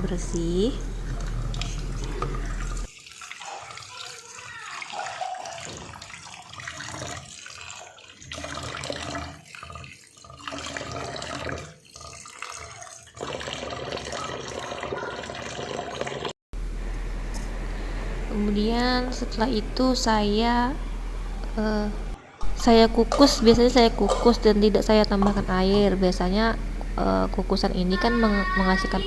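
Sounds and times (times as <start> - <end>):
running water splashing: 0.9 - 16.3.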